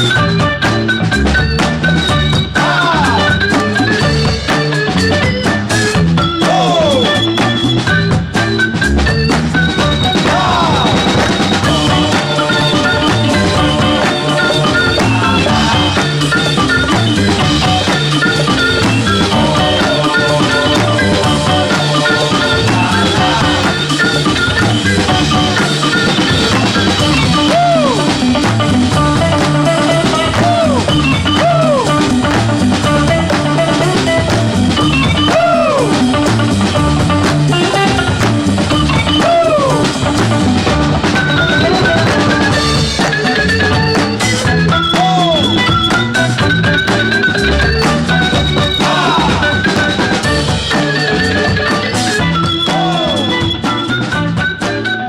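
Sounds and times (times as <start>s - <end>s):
drum kit beat: 0.0s - 55.0s
upbeat background music: 0.0s - 55.0s.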